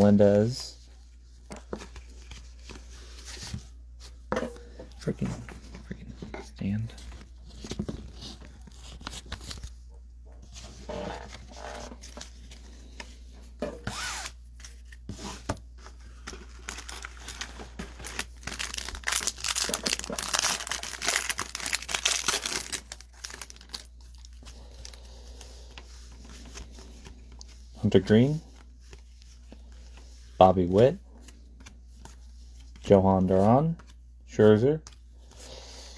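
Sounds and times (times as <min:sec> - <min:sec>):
cards being handled: 0:01.3 - 0:04.2, 0:05.0 - 0:09.8, 0:14.0 - 0:35.5
foil wrappers crinkling and tearing: 0:16.0 - 0:25.0.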